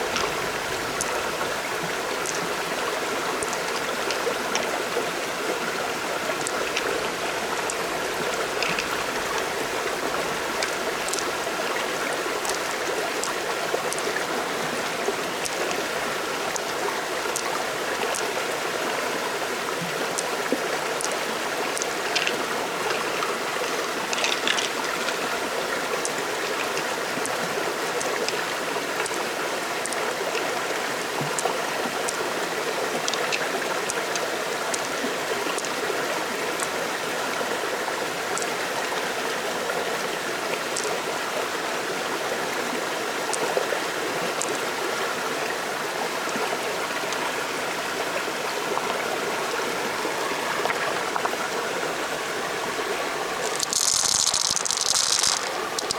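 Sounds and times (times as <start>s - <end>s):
stream water running: 0.0s - 55.9s
small clicks: 0.1s - 1.3s, 2.2s - 2.6s, 3.4s - 4.7s, 6.4s - 6.9s, 8.6s - 9.6s, 10.5s - 11.4s, 12.4s - 14.1s, 21.0s - 23.0s, 24.1s - 25.2s, 29.8s - 30.1s, 53.4s - 55.9s.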